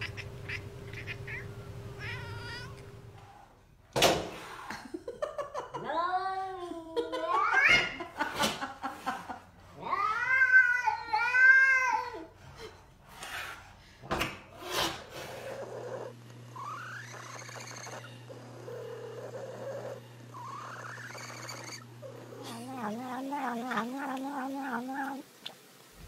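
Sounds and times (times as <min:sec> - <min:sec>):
cat meowing: 0:00.0 - 0:02.9.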